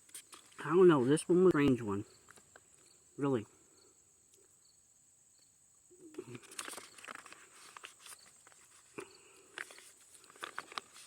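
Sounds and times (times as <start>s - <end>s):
crickets chirring: 0.0s - 11.0s
clicks and rustles of handling: 6.3s - 11.0s.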